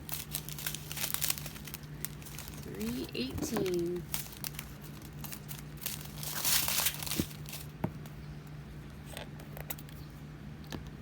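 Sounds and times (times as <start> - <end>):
plastic bag crinkling: 0.0 - 7.8.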